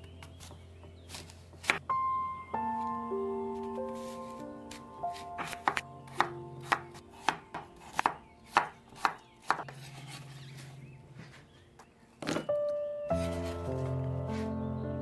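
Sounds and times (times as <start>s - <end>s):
soft background music: 0.0s - 15.0s
knife chopping on cutting board: 5.4s - 9.7s.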